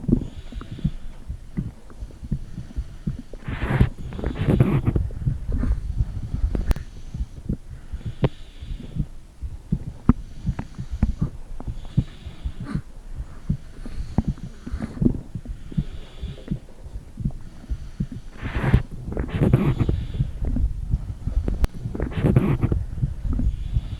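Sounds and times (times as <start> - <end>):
dull low heartbeat thumps: 0.0 - 23.9.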